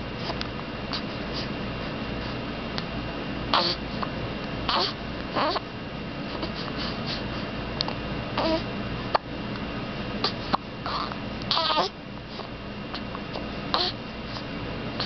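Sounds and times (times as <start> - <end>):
baby high-pitched squeaks: 10.9 - 11.9.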